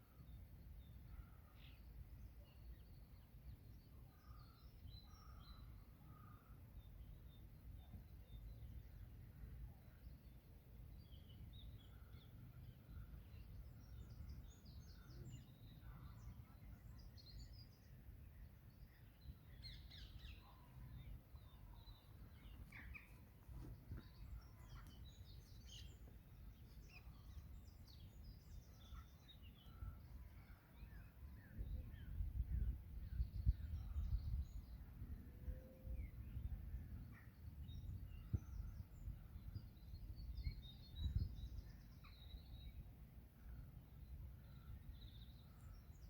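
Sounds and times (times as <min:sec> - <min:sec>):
birds chirping: 0:11.2 - 0:32.2.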